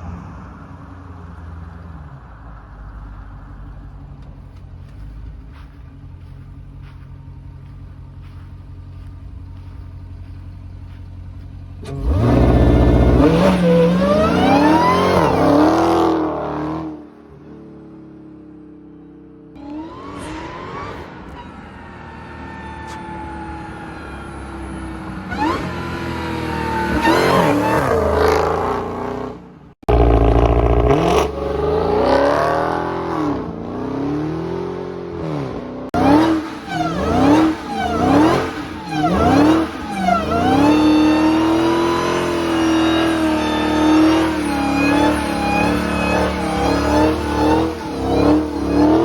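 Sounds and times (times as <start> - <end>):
supercharger whine: 1.4 - 17.8, 18.5 - 49.0
car engine revving: 1.7 - 49.0.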